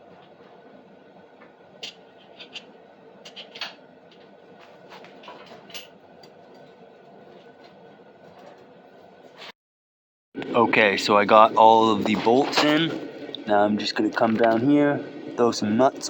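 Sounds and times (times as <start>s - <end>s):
propane heater running: 0.0s - 9.5s, 10.4s - 16.0s.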